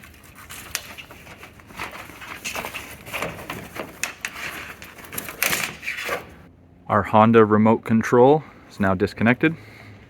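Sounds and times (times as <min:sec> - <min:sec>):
sharp clicks and rustles: 0:00.0 - 0:06.4.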